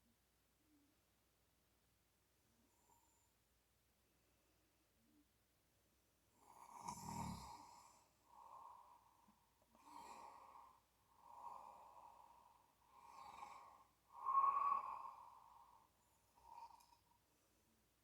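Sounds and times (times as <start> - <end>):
breathy snoring: 6.5 - 9.1, 9.8 - 15.8.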